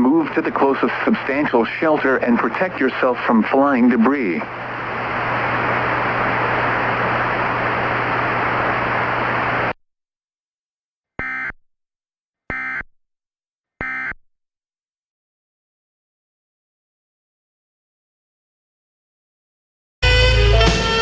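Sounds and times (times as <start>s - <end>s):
radio static hiss with hum: 0.0s - 9.8s
data tone bursts: 11.2s - 11.6s, 12.5s - 12.9s, 13.8s - 14.2s.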